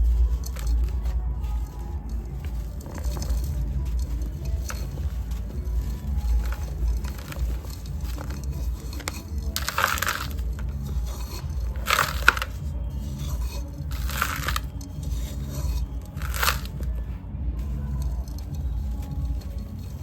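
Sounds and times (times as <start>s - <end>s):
sand crumbling by hand: 0.0s - 16.9s
steady low hum: 0.0s - 20.0s.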